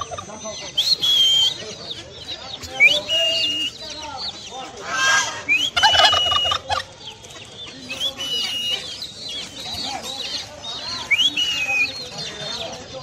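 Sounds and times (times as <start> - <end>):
harsh bird call: 0.0 - 6.9, 7.7 - 13.0
poultry calling: 0.0 - 13.0.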